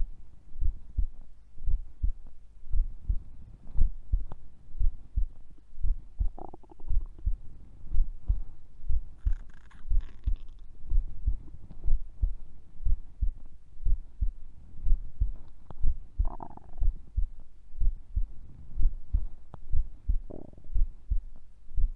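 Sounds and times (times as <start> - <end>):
heartbeat lub-dub: 0.0 - 21.9
stomach gurgling: 6.2 - 7.2, 16.2 - 17.0, 20.3 - 20.7.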